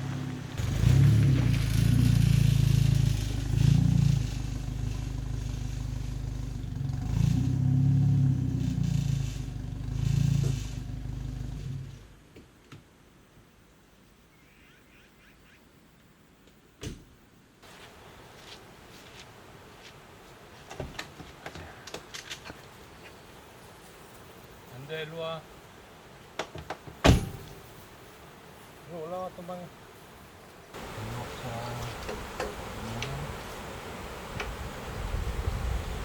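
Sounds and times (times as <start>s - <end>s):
car engine revving: 0.0s - 12.1s
sharp knock: 27.0s - 27.6s.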